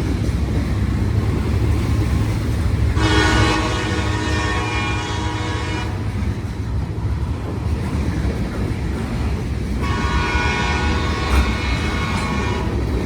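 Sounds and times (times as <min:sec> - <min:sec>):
train rumbling: 0:00.0 - 0:13.0
locomotive air horn: 0:03.0 - 0:06.2, 0:09.8 - 0:13.0.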